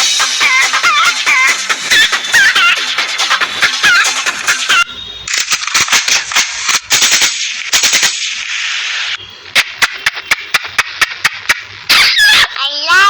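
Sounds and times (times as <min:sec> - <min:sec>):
machine-gun fire: 0:05.4 - 0:08.6.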